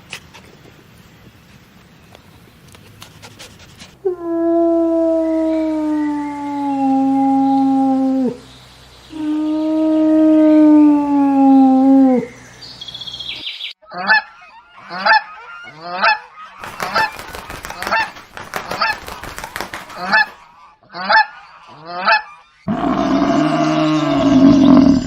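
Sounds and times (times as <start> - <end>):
long falling animal call: 4.0 - 8.4, 9.1 - 12.4, 22.7 - 25.0
loud animal call: 4.0 - 8.4, 9.1 - 12.4, 21.0 - 25.0
honking animal calls: 20.9 - 25.0.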